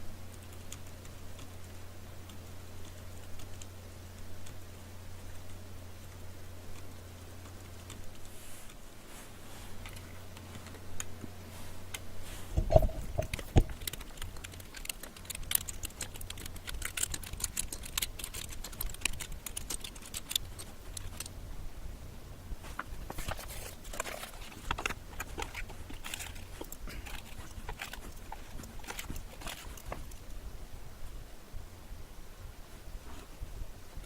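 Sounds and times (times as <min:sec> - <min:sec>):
mechanical keyboard typing: 0:12.7 - 0:21.3.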